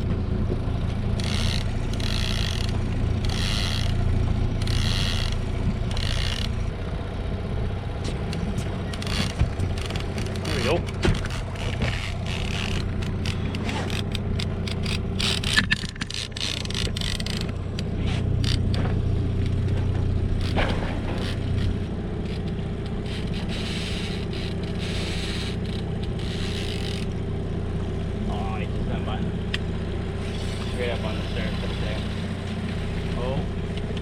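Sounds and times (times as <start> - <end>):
boat motor running: 0.0 - 34.0
fishing gear scraping and clicking: 1.2 - 6.7, 8.1 - 27.2.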